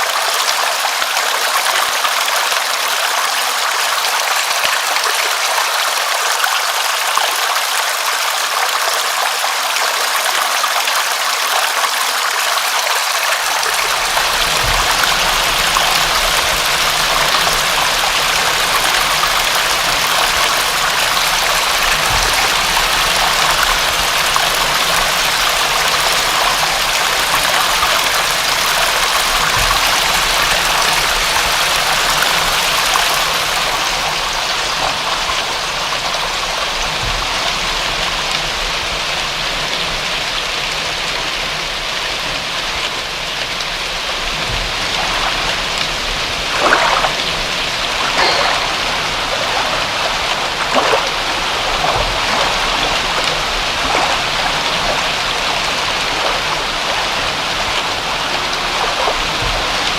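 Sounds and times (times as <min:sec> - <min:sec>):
steady rain: 0:00.0 - 0:59.9
drop splashes: 0:13.4 - 0:35.5, 0:44.2 - 0:59.9.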